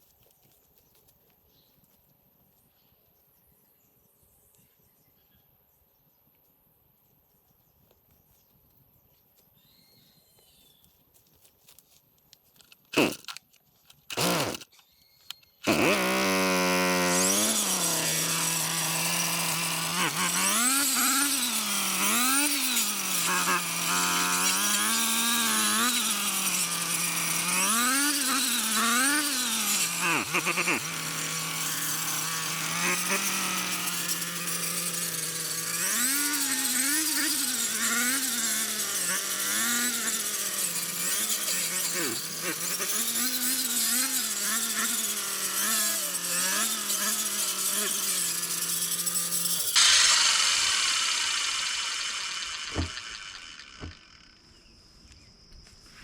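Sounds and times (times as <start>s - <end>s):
brush cutter engine revving: 12.6s - 54.5s
brush cutter starter cord pulls: 12.6s - 54.5s.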